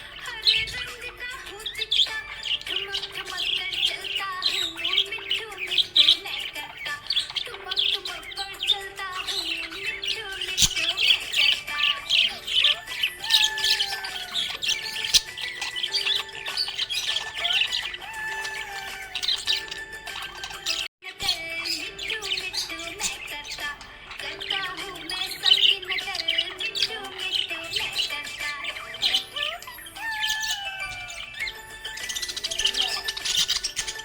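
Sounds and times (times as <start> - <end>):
budgerigars chirping: 0.0 - 34.0
background melody: 7.5 - 34.0.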